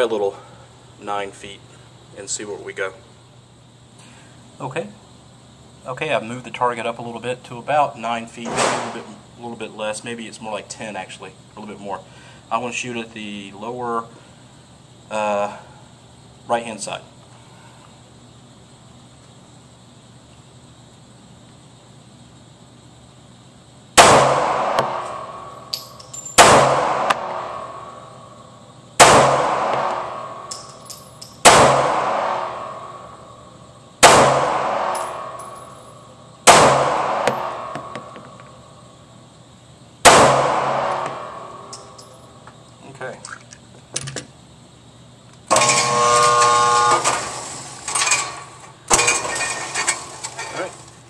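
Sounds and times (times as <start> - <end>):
loud sharp knock: 24.0 - 25.4, 26.4 - 27.8, 29.0 - 30.3, 36.5 - 38.4
pistol shots echoing: 24.0 - 25.5, 26.4 - 27.8, 29.0 - 30.6, 31.4 - 32.9, 34.0 - 35.7, 36.4 - 37.9, 40.0 - 41.6
light metallic clinks: 25.6 - 26.4, 30.5 - 31.4, 34.9 - 36.2, 41.7 - 42.6
electric motor whine: 45.5 - 47.6.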